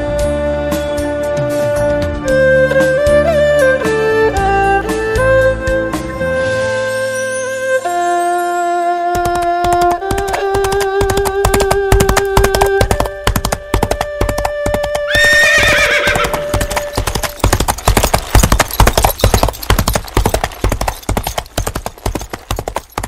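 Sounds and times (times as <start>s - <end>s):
erhu long notes: 2.0s - 16.6s
horse hooves clip-clopping: 9.1s - 23.0s
horse whinnying: 14.9s - 19.6s.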